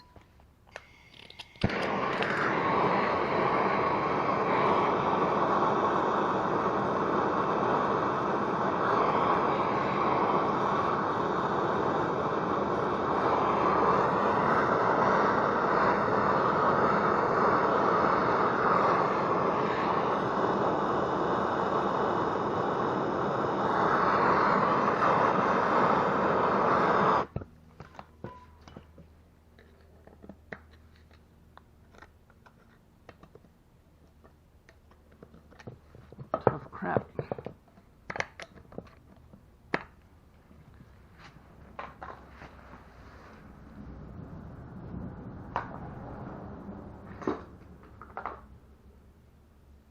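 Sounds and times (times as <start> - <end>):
gas torch flame hissing: 0.6 - 31.2, 40.8 - 49.0.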